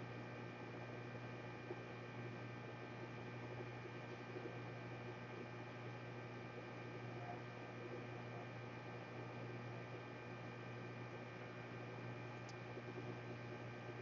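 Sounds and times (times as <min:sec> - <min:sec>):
steady electrical hum: 0:00.0 - 0:14.0.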